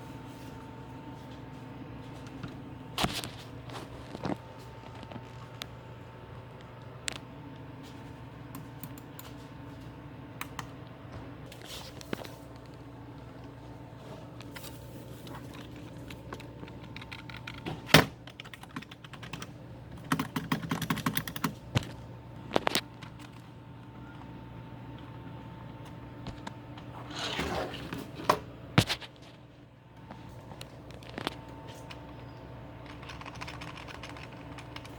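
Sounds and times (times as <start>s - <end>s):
faint steady hum: 0.0s - 34.9s
computer keyboard typing: 15.5s - 23.5s, 31.9s - 34.9s.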